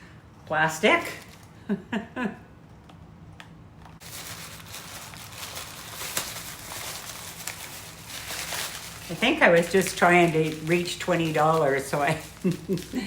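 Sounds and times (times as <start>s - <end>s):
plastic packaging crinkling: 0.9s - 1.6s, 4.0s - 13.0s.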